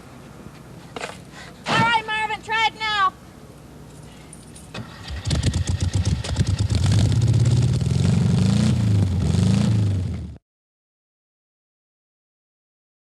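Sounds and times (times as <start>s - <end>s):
vehicle engine revving: 4.8s - 10.4s.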